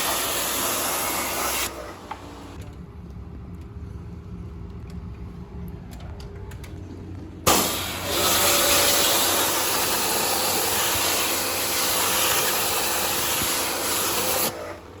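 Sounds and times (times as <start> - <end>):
high-pressure jet hissing: 0.0 - 2.4, 7.5 - 14.9.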